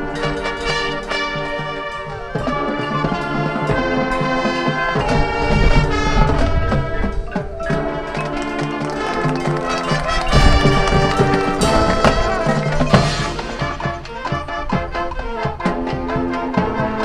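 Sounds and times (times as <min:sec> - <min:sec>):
drums: 0:02.1 - 0:17.0
marching band playing: 0:08.2 - 0:14.4.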